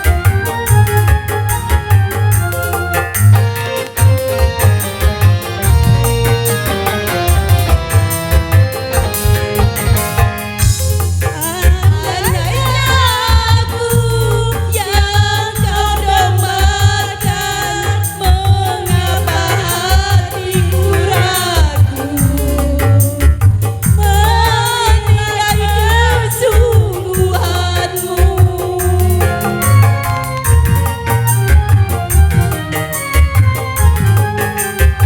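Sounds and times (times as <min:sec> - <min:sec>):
pounding bass beat: 0:00.0 - 0:35.0
wavering bending lead melody: 0:00.0 - 0:35.0.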